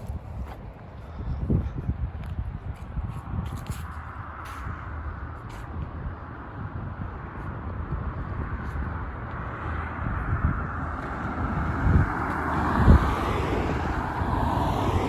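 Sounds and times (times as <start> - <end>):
street noise: 0.0 - 15.0
vehicle passing: 4.4 - 15.0.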